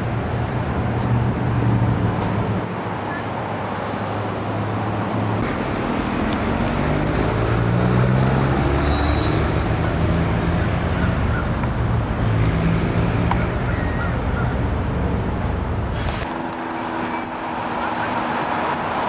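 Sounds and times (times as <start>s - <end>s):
road noise: 0.0s - 19.0s.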